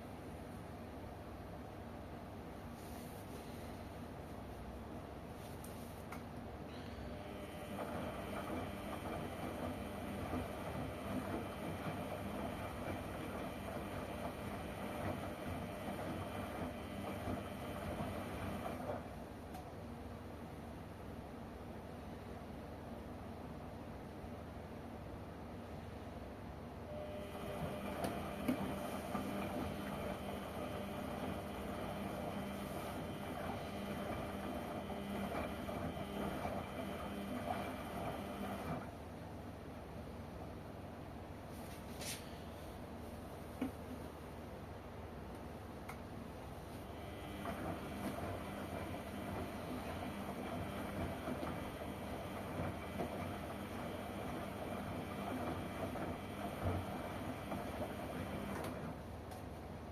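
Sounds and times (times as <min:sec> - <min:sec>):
washing machine running: 0:07.1 - 0:21.0, 0:26.9 - 0:40.7, 0:46.2 - 0:59.9.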